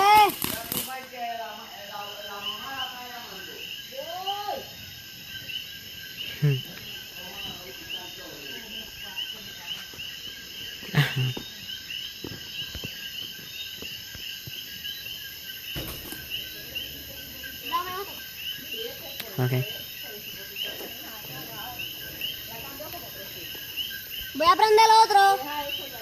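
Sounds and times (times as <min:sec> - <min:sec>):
sharp pops: 0:00.0 - 0:01.0, 0:15.7 - 0:16.5
crickets chirping: 0:00.0 - 0:26.0.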